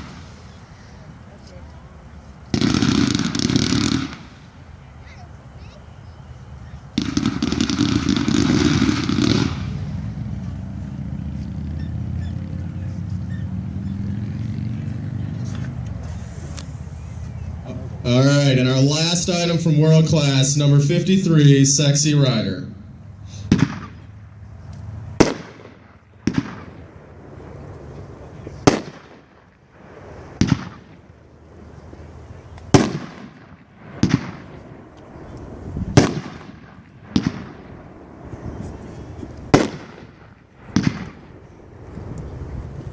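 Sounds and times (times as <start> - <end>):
firework crackling bangs: 0.0 - 0.9, 2.5 - 4.8, 6.9 - 10.2, 23.3 - 24.0, 25.2 - 27.4, 28.5 - 32.1, 32.7 - 42.2.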